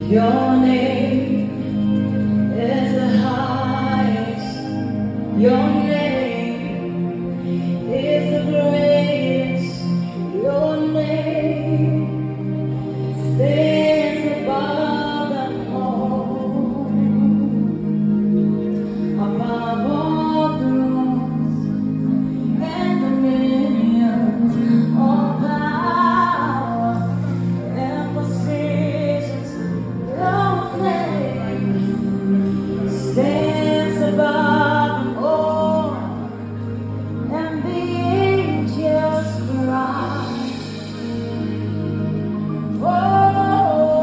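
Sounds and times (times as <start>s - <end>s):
woman singing gospel: 0.0s - 17.8s, 18.8s - 36.6s, 37.2s - 41.6s, 42.7s - 44.0s
sustained accompanying chords: 0.0s - 44.0s.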